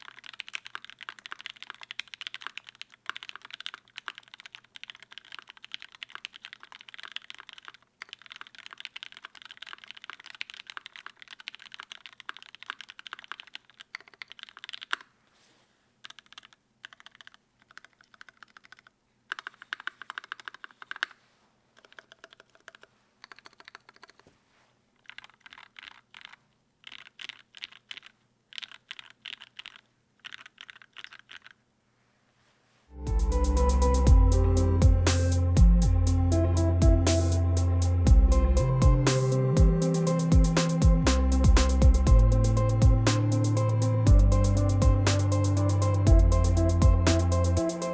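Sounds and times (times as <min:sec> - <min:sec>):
mechanical keyboard typing: 0:00.0 - 0:15.0, 0:16.0 - 0:21.2, 0:21.8 - 0:24.2, 0:25.0 - 0:31.6, 0:38.9 - 0:47.9.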